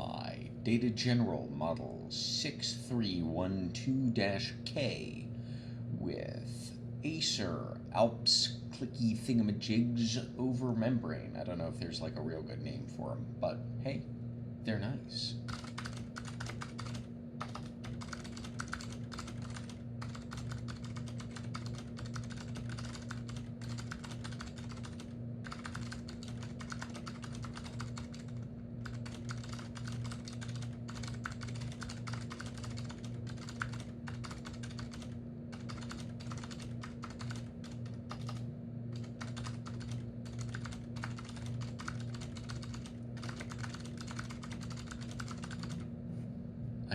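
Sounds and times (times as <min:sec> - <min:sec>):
steady low hum: 0:00.0 - 0:46.9
clicky keyboard typing: 0:15.5 - 0:38.4, 0:39.0 - 0:45.8.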